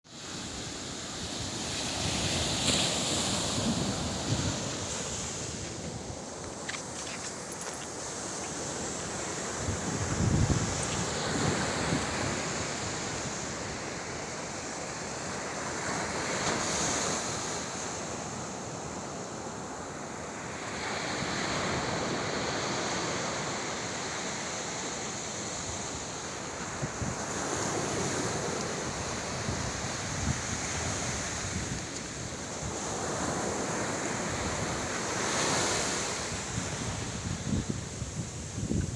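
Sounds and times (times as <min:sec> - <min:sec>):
sea waves breaking on shore: 0:00.1 - 0:18.8, 0:20.4 - 0:38.9
wind buffeting microphone: 0:01.4 - 0:13.9, 0:26.7 - 0:38.9.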